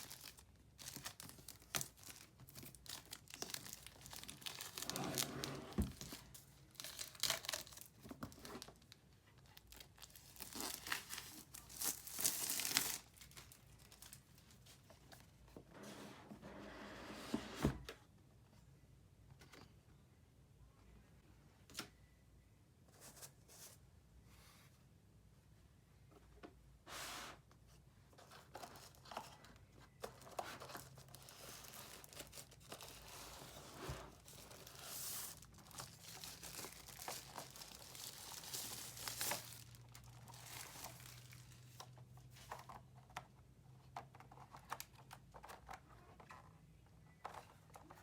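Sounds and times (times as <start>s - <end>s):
wrapping crinkling and tearing: 0.0s - 14.9s, 30.0s - 42.8s.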